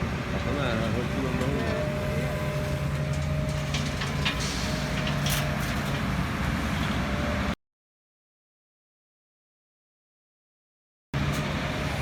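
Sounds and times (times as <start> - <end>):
heavy diesel engine running: 0.0 - 7.5, 11.2 - 12.0.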